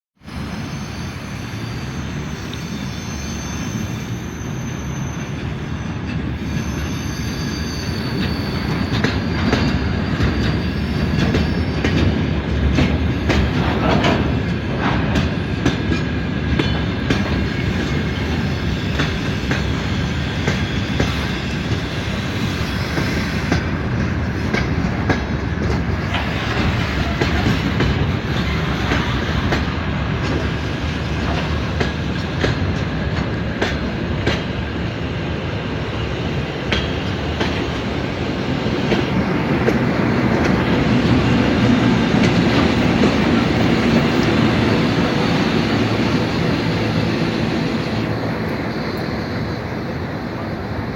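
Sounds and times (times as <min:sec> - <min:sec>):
wheel squeal: 0:00.3 - 0:12.1
freight wagons rumbling over rails: 0:08.2 - 0:50.9.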